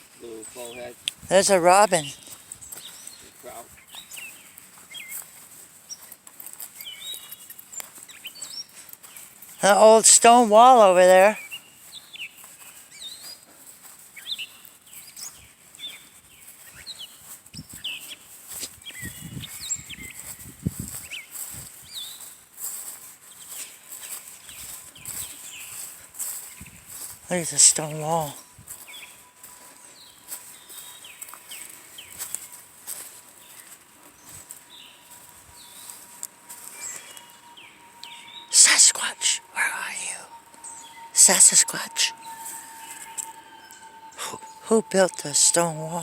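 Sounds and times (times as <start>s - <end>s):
birds chirping: 0.0s - 46.0s
footsteps crunching on path: 0.0s - 46.0s.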